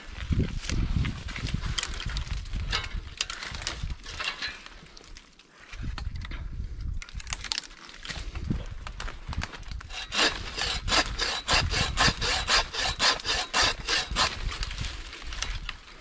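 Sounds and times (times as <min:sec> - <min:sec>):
hand saw cutting wood: 0:09.8 - 0:15.6.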